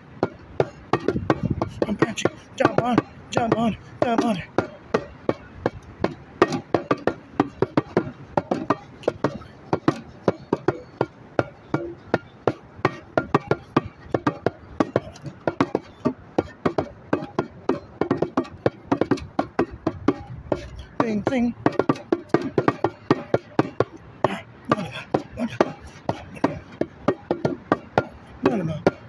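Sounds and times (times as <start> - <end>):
bongos played by hand: 11.7 - 29.0.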